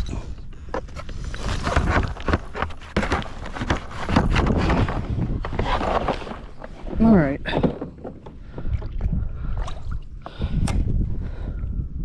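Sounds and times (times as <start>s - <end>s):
handling knocks and rustles: 0.0s - 8.4s
wind buffeting microphone: 8.4s - 12.0s.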